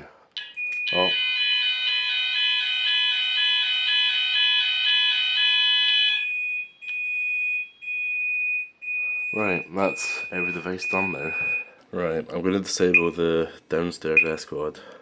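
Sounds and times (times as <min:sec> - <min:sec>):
fire alarm switching tone: 0:00.4 - 0:11.7
steady high-pitched beep: 0:08.9 - 0:11.7.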